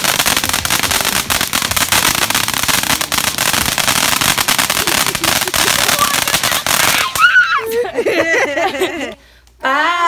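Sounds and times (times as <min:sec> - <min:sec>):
fireworks crackling and popping: 0:00.0 - 0:07.9.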